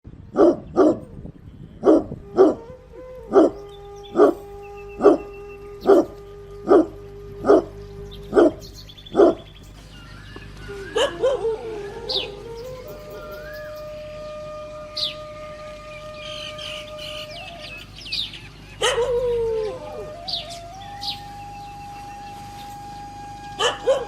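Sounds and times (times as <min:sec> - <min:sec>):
dog barking: 0:00.4 - 0:01.1, 0:01.8 - 0:02.6, 0:03.3 - 0:03.6, 0:05.8 - 0:06.1, 0:06.7 - 0:07.7, 0:08.3 - 0:09.5, 0:11.0 - 0:11.5, 0:18.8 - 0:19.2, 0:23.6 - 0:24.0.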